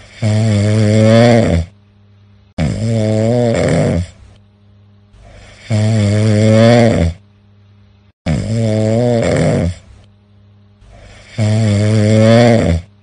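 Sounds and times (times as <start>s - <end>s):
long pitched snores: 0.0s - 1.8s, 2.6s - 4.3s, 5.2s - 7.2s, 8.2s - 10.0s, 10.8s - 13.0s.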